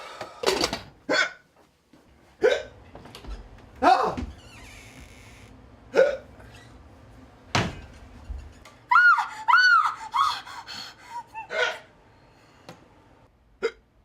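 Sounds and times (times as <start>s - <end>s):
person hiccupping: 13.6s - 13.9s.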